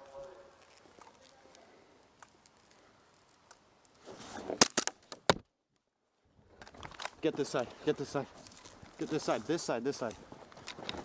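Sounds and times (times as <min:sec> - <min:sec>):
airsoft gun cracks: 0:04.6 - 0:05.4.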